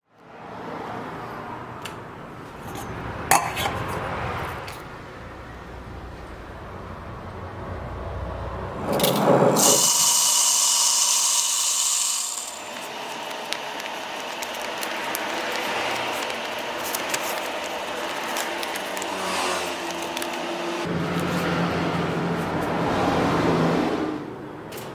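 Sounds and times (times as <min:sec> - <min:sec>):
cups and utensils clattering: 0:02.6 - 0:04.0
coffee machine whirring and hissing: 0:04.7 - 0:24.9.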